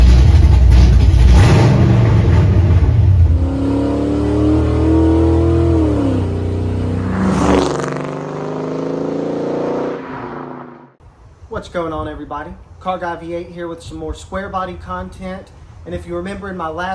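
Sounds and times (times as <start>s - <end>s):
car engine rumbling and revving: 0.0s - 11.0s.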